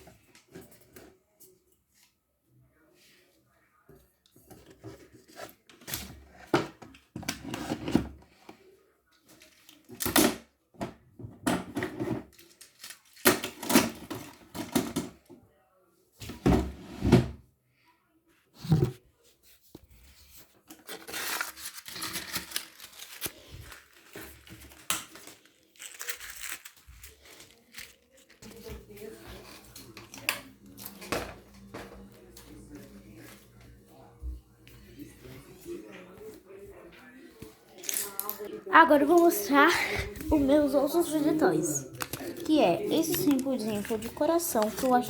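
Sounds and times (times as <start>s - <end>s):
packaging rustling and crinkling: 20.6s - 28.6s, 40.6s - 45.0s.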